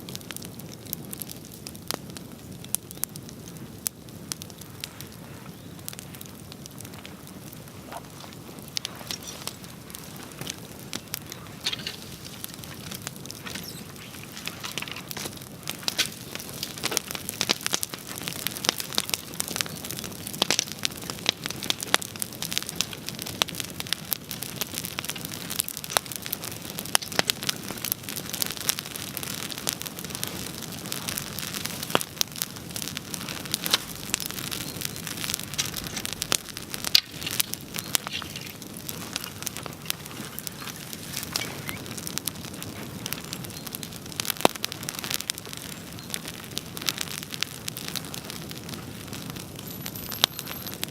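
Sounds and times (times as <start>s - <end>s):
bonfire crackling: 0.0s - 50.9s.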